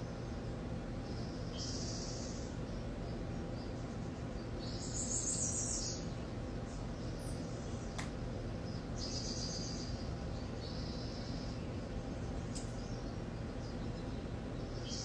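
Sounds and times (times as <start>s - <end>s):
birds chirping: 0.0s - 15.0s
low background hum: 0.0s - 15.0s
sharp click: 8.0s - 8.2s.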